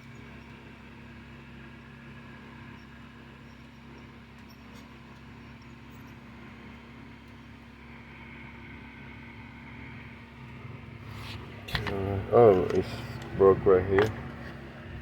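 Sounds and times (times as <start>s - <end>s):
motor humming: 3.5s - 15.0s.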